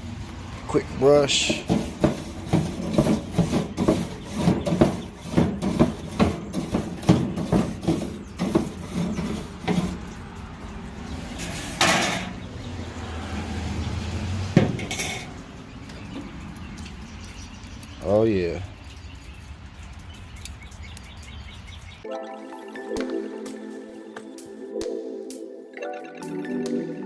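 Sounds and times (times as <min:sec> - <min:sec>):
brush scrubbing metal grate: 0:00.7 - 0:12.5, 0:14.5 - 0:21.9
metal clank: 0:11.4 - 0:12.4, 0:14.6 - 0:15.4.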